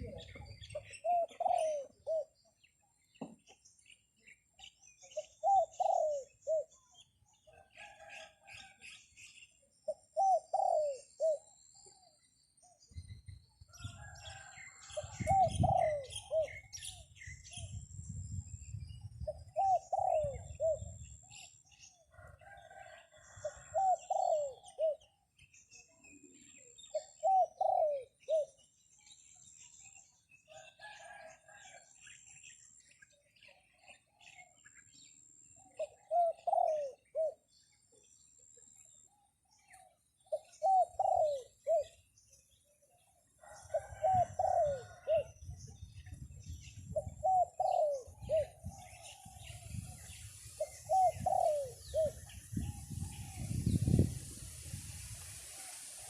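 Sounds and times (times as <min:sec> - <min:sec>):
dove cooing: 0:00.0 - 0:02.4, 0:05.2 - 0:06.7, 0:09.9 - 0:11.5, 0:14.3 - 0:16.7, 0:19.3 - 0:21.0, 0:22.6 - 0:25.0, 0:26.9 - 0:28.6, 0:35.8 - 0:37.4, 0:40.3 - 0:42.0, 0:43.5 - 0:45.4, 0:46.9 - 0:49.3, 0:50.6 - 0:54.0
wind rumbling on microphone: 0:12.8 - 0:21.5, 0:43.7 - 0:56.0.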